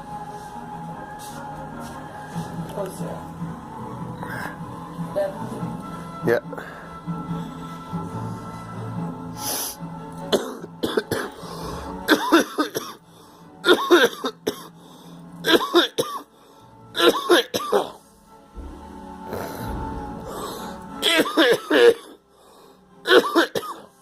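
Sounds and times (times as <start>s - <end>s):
person coughing: 10.3s - 11.4s, 12.1s - 13.0s, 13.6s - 14.7s, 15.5s - 16.3s, 17.0s - 18.0s, 21.0s - 22.2s, 23.1s - 23.9s.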